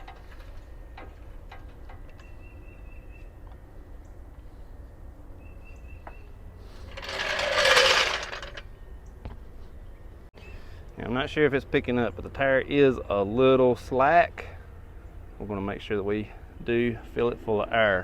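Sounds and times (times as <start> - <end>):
jack clicks: 6.9 - 8.6.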